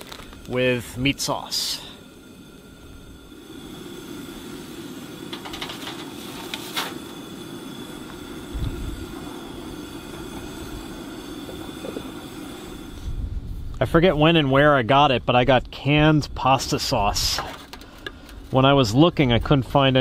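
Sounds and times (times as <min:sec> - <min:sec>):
pot rumbling on a stove: 0:00.0 - 0:13.0.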